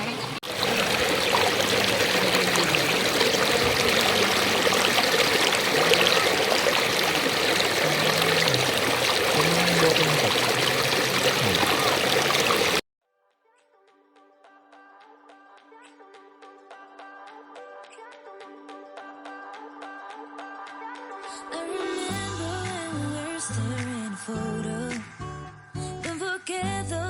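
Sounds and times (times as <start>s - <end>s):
stream water rushing and splashing: 0.0s - 12.8s.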